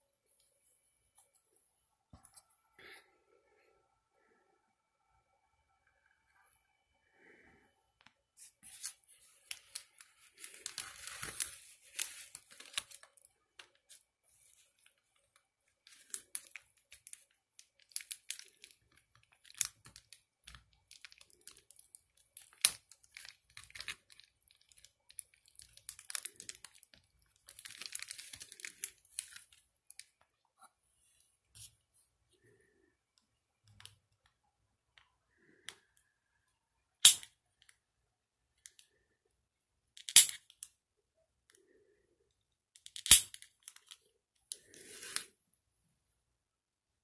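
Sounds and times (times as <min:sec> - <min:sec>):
plastic crinkling and rustling: 0:08.4 - 0:30.4.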